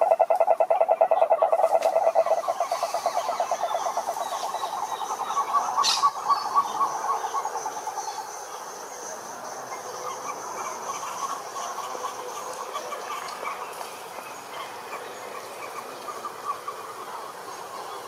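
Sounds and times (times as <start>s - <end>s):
higher-pitched pulsed frog call: 0.0s - 8.2s
frogs calling in pulsed trill: 0.0s - 12.5s.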